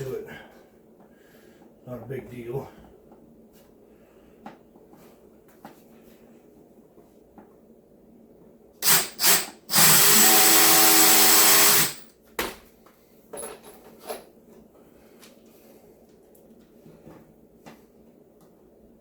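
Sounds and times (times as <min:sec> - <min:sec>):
power drill drilling wood: 0:08.8 - 0:12.0.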